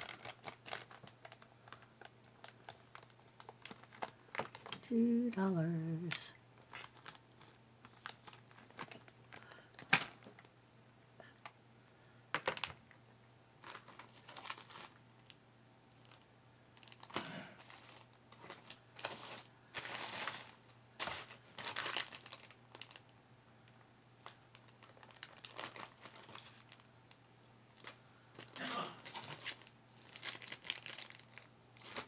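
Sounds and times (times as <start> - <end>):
packaging crinkling: 0.0 - 4.9, 5.7 - 10.5, 13.6 - 15.4, 16.8 - 23.1, 24.2 - 27.2, 27.8 - 32.0.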